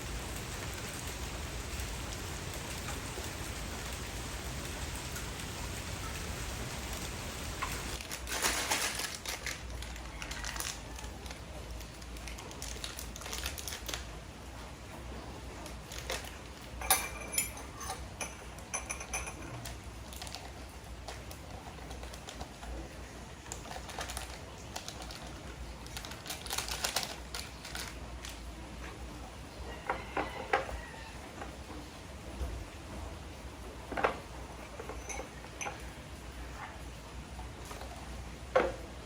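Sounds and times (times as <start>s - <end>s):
low steady hum: 0.0s - 8.0s
objects clicking and clattering: 7.6s - 11.4s, 15.7s - 20.5s, 23.5s - 28.4s, 33.9s - 36.0s.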